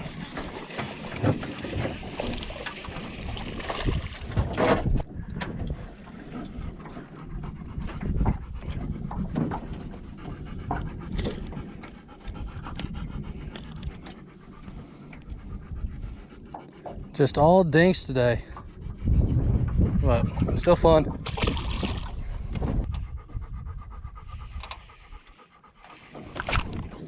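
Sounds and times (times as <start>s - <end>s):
dog panting: 6.6s - 21.0s, 22.3s - 27.0s.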